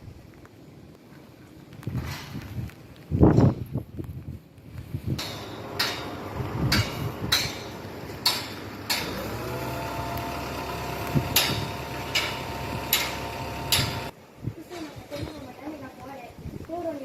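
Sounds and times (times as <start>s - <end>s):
sharp knocks and clatters: 5.2s - 14.1s
steady mechanical hum: 5.2s - 14.1s.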